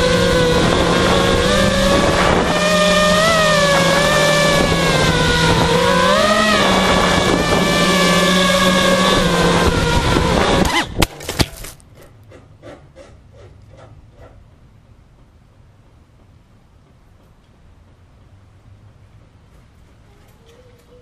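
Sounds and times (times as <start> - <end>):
drone motors whining: 0.0 - 11.0.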